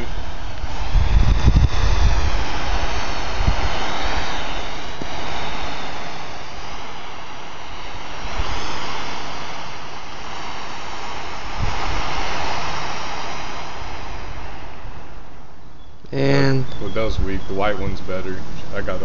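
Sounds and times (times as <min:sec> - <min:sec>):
smoke firework hissing: 0:00.0 - 0:19.0.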